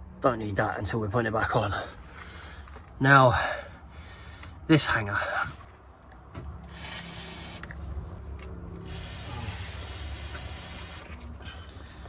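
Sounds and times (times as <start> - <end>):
aerosol spray hissing: 6.7 - 7.7, 8.9 - 11.2.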